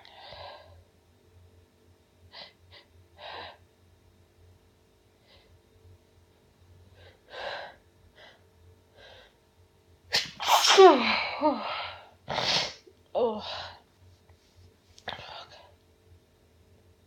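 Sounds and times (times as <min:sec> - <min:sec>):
woman sneezing: 0:10.1 - 0:12.8.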